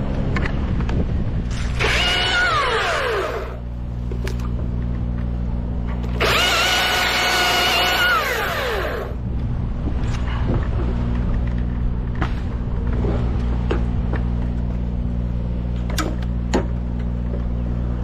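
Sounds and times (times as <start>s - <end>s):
low engine drone: 0.0s - 18.0s
chainsaw engine whining: 1.7s - 3.7s, 6.0s - 9.2s.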